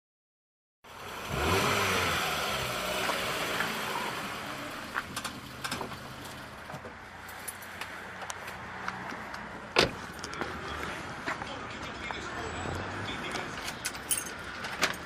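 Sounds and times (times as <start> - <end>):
vehicle engine revving past: 1.2 - 4.5.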